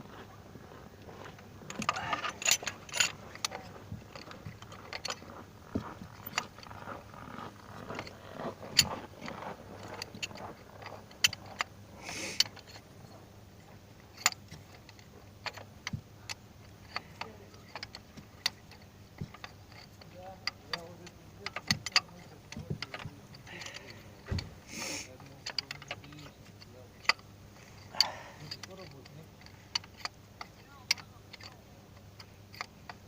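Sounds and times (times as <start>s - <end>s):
metal hand tools clinking: 1.7s - 6.7s, 14.1s - 33.0s
short scrapes: 12.0s - 12.6s, 24.6s - 25.2s.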